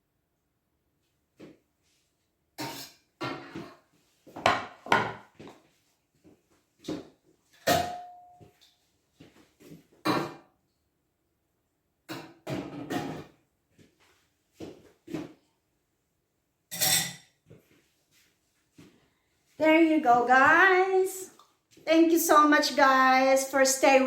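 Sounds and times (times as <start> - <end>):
dishes and utensils clinking: 2.6 - 3.8, 7.6 - 8.5, 16.7 - 17.4.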